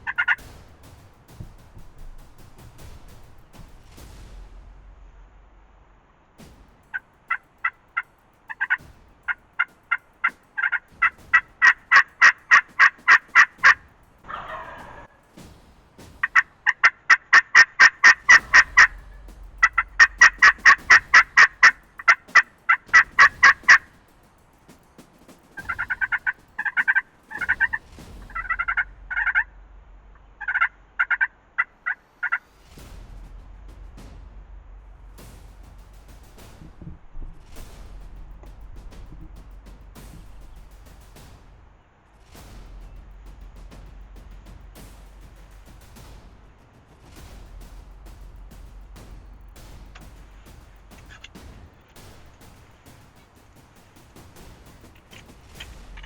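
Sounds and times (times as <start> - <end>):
turkey yelping: 0.0 - 0.4, 8.5 - 8.8, 9.6 - 15.1, 16.3 - 19.1, 19.7 - 23.9, 25.6 - 29.4, 30.4 - 32.4.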